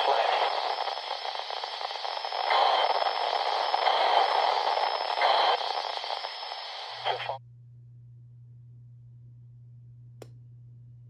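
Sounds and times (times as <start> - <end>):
radio static hiss: 0.0 - 7.4.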